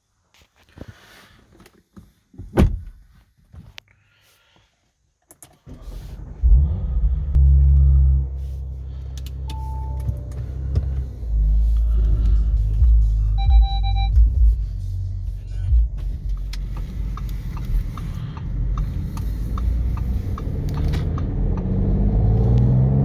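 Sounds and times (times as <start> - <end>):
thump: 2.4 - 3.0
car engine starting and idling: 5.4 - 23.0.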